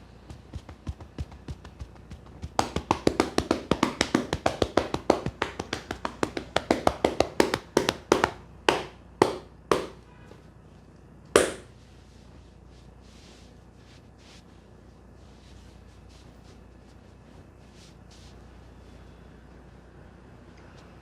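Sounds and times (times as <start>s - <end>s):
rapid hand strikes massage: 0.0s - 10.0s, 11.4s - 11.8s
light taps: 0.2s - 10.0s
hand slaps: 0.3s - 10.0s, 11.4s - 11.7s.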